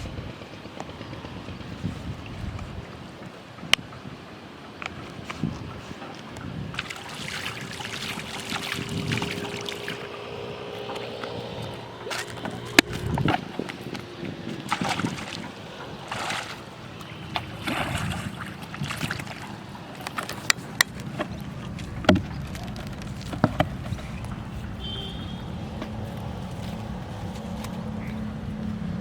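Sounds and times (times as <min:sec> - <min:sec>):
water sloshing and splashing: 0:01.7 - 0:29.0
sharp knocks and clicks: 0:22.0 - 0:24.4.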